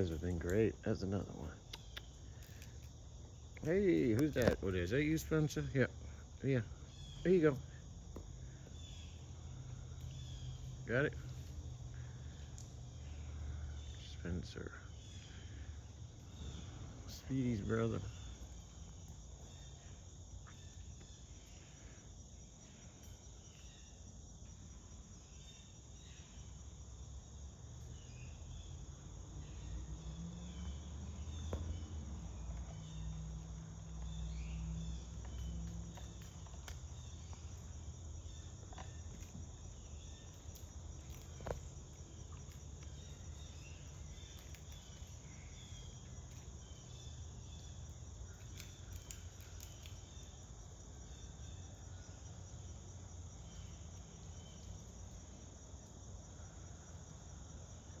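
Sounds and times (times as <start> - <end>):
insects trilling: 0.0 - 58.0
sharp clicks: 3.6 - 4.6.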